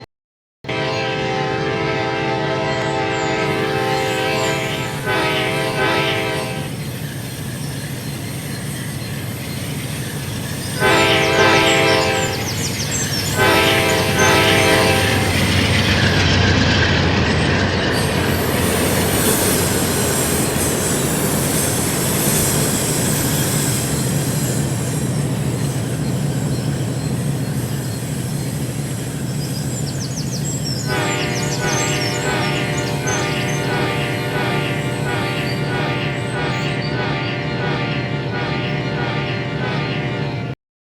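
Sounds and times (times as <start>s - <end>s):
locomotive air horn blasts: 0.6s - 6.8s, 10.8s - 15.7s, 30.9s - 40.6s
train engine rumble: 0.7s - 40.6s
wheels clattering and squealing on rails: 0.8s - 40.6s.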